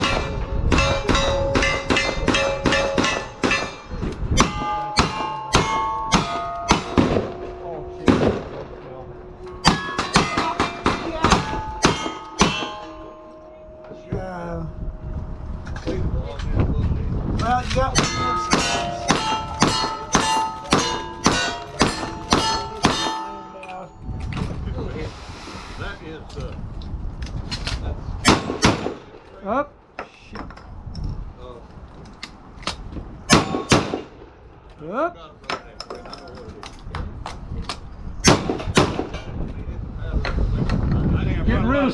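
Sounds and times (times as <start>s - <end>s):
gunshots: 0.0s - 8.9s, 18.0s - 23.3s, 28.3s - 29.1s, 33.3s - 34.2s
steel plates ringing: 0.0s - 15.7s, 17.8s - 24.2s.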